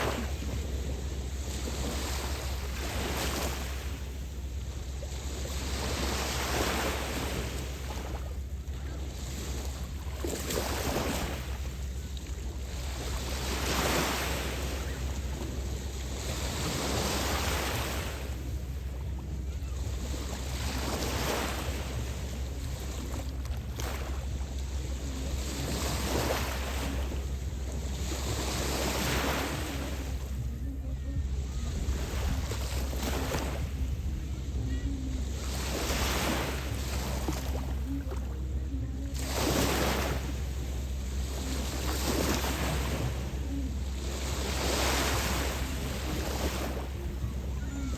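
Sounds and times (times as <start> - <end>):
lake waves washing ashore: 0.0 - 47.9
low wind rumble on microphone: 0.0 - 47.9.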